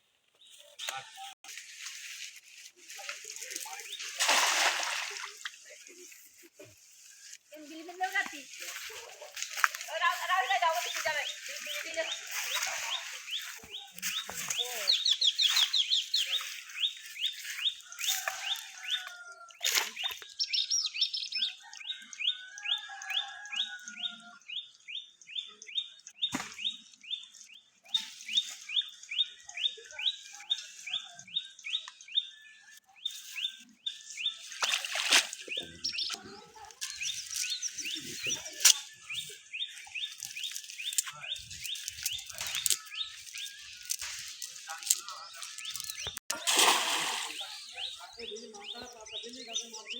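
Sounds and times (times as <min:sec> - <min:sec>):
bird chirping: 0:10.1 - 0:22.8, 0:24.5 - 0:46.3, 0:47.2 - 0:49.9.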